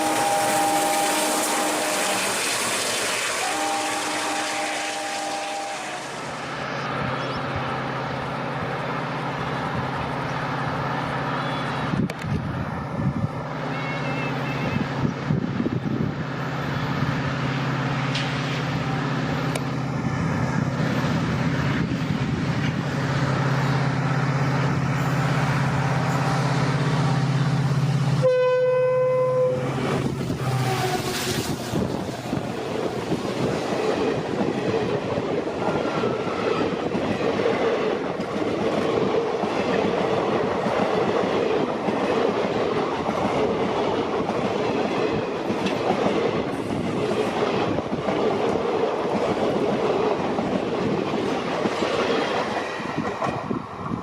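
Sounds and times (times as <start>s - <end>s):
train horn blast: 0.0s - 6.5s, 28.2s - 31.4s
diesel locomotive engine drone: 0.0s - 54.0s
train rattling on track: 0.0s - 54.0s.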